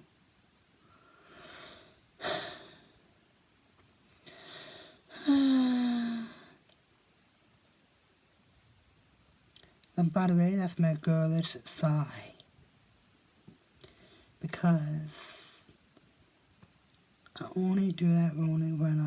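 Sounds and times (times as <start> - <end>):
woman breathing: 0.8 - 3.1, 4.2 - 6.6, 13.8 - 14.4
sharp intake of breath: 4.2 - 6.5
woman sighing: 4.2 - 6.6.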